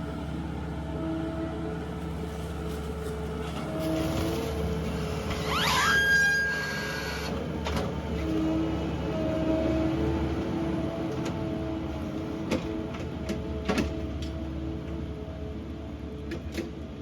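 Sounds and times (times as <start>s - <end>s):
rising hydraulic whine: 5.2s - 7.4s.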